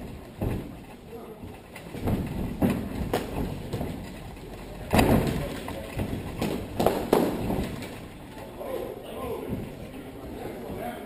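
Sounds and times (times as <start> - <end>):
fighting sticks striking: 2.0 - 4.0, 4.9 - 8.0.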